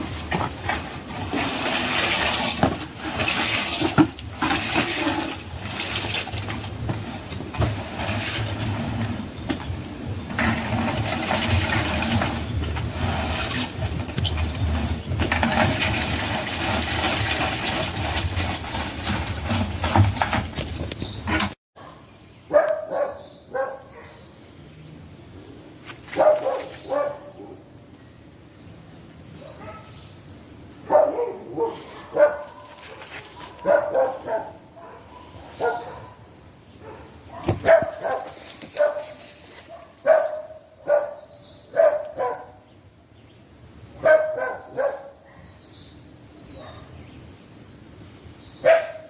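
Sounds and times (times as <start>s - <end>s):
dog barking: 21.8s - 24.2s, 26.2s - 27.7s, 29.4s - 30.0s, 30.9s - 42.6s, 44.0s - 45.5s, 46.6s - 46.9s, 48.6s - 49.0s.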